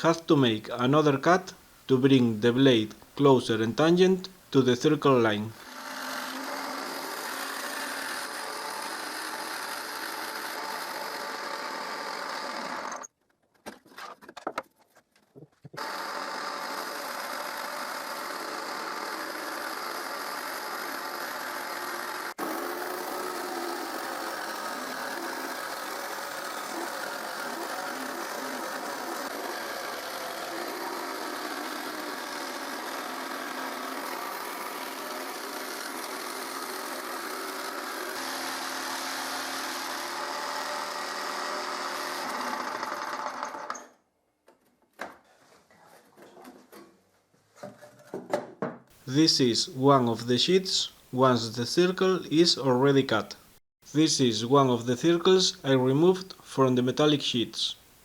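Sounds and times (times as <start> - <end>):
jigsaw cutting sheet metal: 5.6 - 13.1, 15.8 - 44.0.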